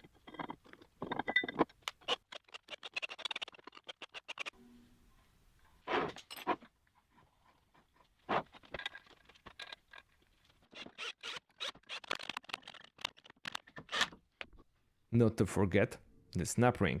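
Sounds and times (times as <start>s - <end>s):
small metal parts clicking and scraping: 0.0s - 4.6s, 8.3s - 14.1s.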